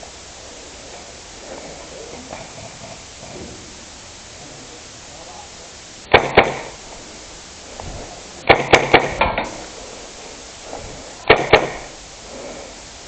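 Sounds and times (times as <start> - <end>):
airsoft gun shots: 6.1 - 6.8, 7.8 - 9.7, 11.2 - 12.0.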